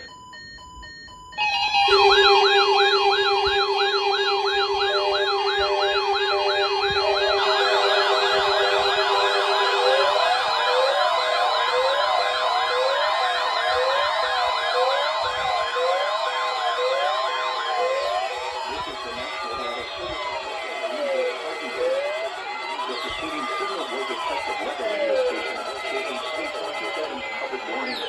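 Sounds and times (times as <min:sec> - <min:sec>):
steady and pulsed beeps: 0:00.0 - 0:28.0
warbling siren-like tones: 0:01.4 - 0:28.0
faint stutter of tones: 0:17.8 - 0:28.0.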